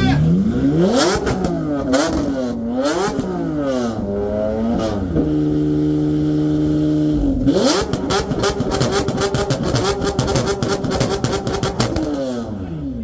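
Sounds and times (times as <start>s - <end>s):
car engine revving: 0.0s - 13.0s
exhaust pops and crackles: 7.2s - 12.4s.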